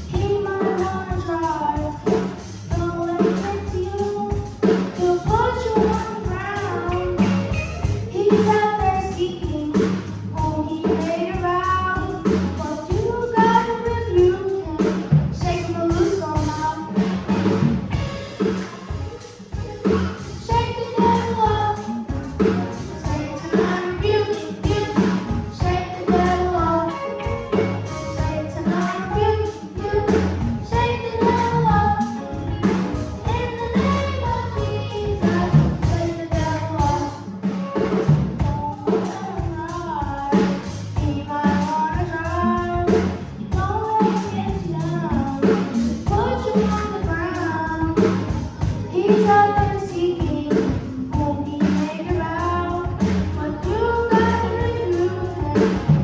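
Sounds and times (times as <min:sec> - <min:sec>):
drum kit: 0:00.0 - 0:56.0
children's choir singing gospel: 0:16.9 - 0:37.9, 0:51.6 - 0:56.0.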